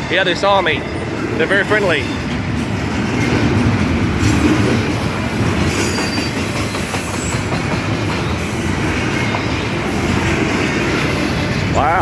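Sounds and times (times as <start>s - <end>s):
freight train rumbling past: 0.0s - 12.0s
high wheel squeal: 4.2s - 10.2s.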